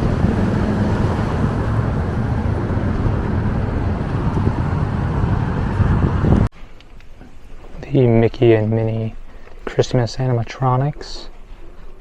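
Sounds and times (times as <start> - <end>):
car road noise: 0.0 - 6.5.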